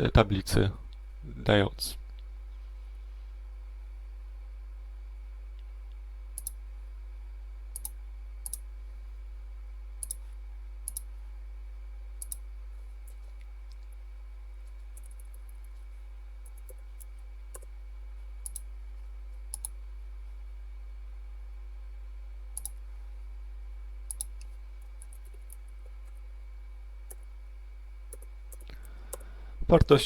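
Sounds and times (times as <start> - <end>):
steady low hum: 0.0 - 30.0
computer mouse clicks: 5.9 - 6.6, 7.8 - 8.6, 10.0 - 10.2, 10.8 - 11.1, 12.2 - 12.4, 14.9 - 15.8, 16.4 - 17.7, 18.4 - 18.7, 19.5 - 19.8, 22.6 - 22.8, 24.1 - 26.2, 27.1 - 27.3, 28.1 - 29.3.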